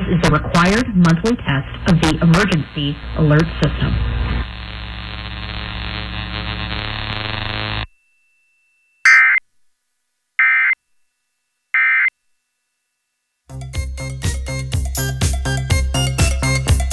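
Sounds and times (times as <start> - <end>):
steady drone of held tones: 0.1 - 9.0
emergency alert data tone bursts: 9.0 - 9.4, 10.4 - 10.8, 11.8 - 12.1.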